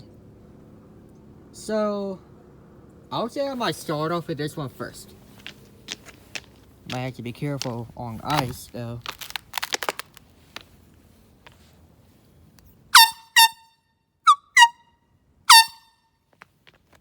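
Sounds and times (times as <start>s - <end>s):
air horn blasts: 12.9s - 14.9s, 15.5s - 16.1s.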